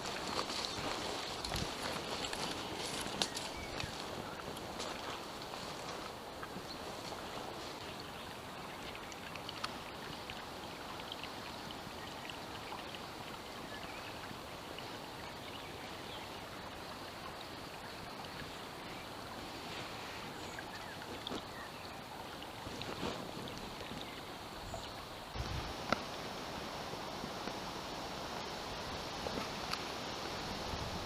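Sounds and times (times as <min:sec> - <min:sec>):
river water rushing: 0:00.0 - 0:31.0
faint clicks: 0:08.9 - 0:10.4.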